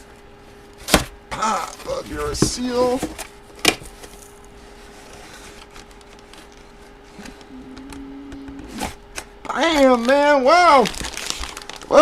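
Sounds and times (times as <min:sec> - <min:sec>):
packaging rustling: 0:01.6 - 0:06.9, 0:09.5 - 0:12.0.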